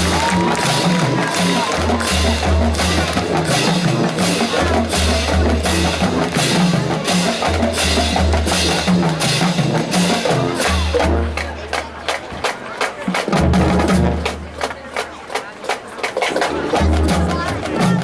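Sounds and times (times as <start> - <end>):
drum kit beat: 0.0 - 12.2
live band playing rhythm and blues: 0.0 - 18.0.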